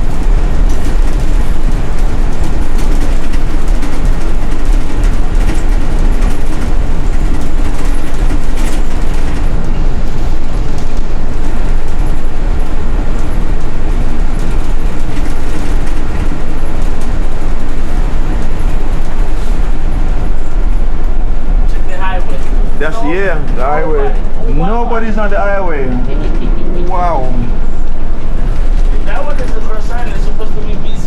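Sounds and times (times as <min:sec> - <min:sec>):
rattles and knocks: 0:00.0 - 0:22.8
bus engine and road rumble: 0:00.0 - 0:31.0.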